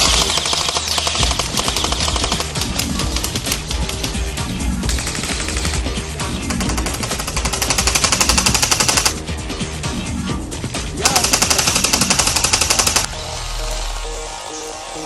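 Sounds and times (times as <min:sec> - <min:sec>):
automatic gunfire bursts: 0:00.0 - 0:03.1, 0:04.9 - 0:09.2, 0:11.0 - 0:13.1
background music with beat: 0:00.0 - 0:15.0.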